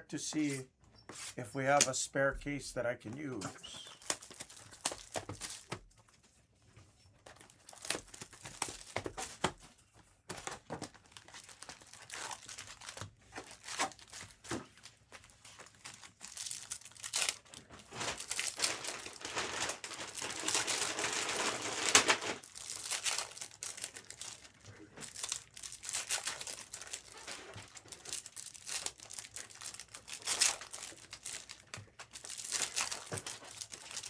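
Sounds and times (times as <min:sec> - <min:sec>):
plastic wrapping crinkling and tearing: 0:03.6 - 0:05.8, 0:07.2 - 0:09.6, 0:10.3 - 0:34.0.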